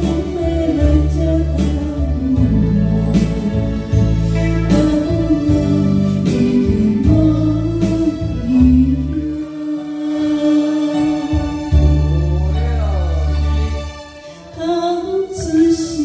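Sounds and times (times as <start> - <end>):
backing track with bass and drums: 0.0 - 9.4, 10.9 - 13.7
person singing: 0.0 - 16.0.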